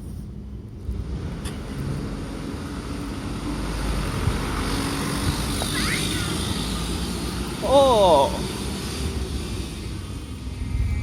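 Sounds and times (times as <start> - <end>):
vehicle engine and tyre noise: 0.0 - 11.0.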